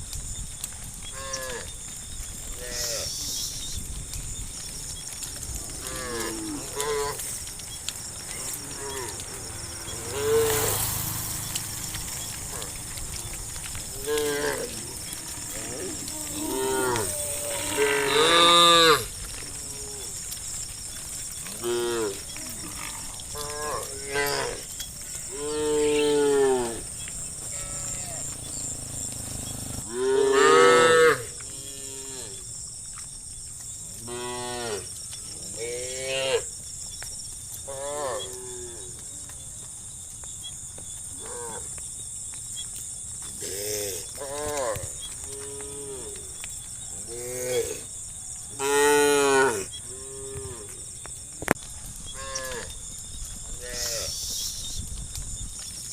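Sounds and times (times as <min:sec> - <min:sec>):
steady high-pitched hiss: 0:00.0 - 0:30.4, 0:42.1 - 0:55.9
cattle mooing: 0:12.1 - 0:20.1, 0:21.5 - 0:32.4.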